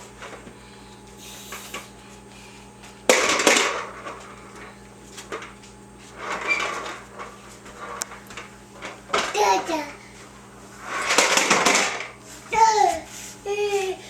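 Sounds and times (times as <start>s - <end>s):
steady low hum: 0.0s - 14.0s
soft rustling scuffle: 12.2s - 14.0s.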